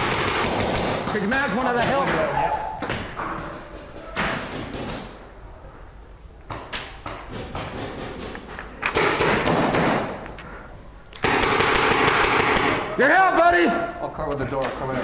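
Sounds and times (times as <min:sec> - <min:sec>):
paintball markers firing: 0:00.0 - 0:01.3, 0:06.5 - 0:10.3, 0:11.2 - 0:12.9.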